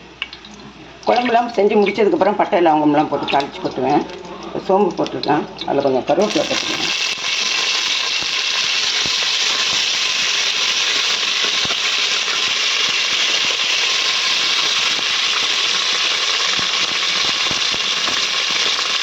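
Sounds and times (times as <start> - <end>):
spices sizzling in hot oil: 6.2 - 19.0.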